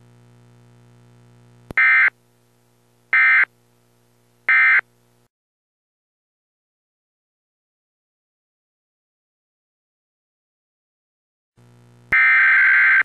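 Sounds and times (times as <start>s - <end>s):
faint steady hum: 0.0s - 5.3s, 11.6s - 13.0s.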